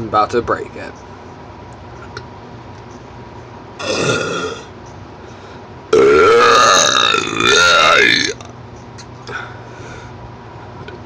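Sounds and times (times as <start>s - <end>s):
person burping: 3.8s - 4.7s, 5.9s - 8.4s.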